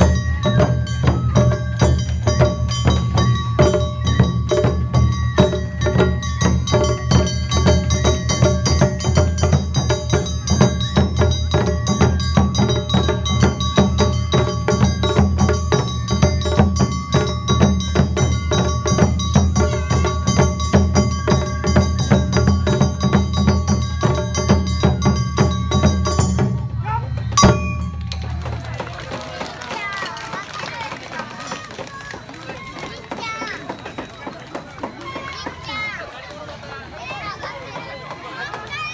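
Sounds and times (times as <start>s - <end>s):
hand gongs clanging: 0.0s - 28.7s
drums beating: 0.0s - 38.9s
held high note: 23.4s - 28.8s.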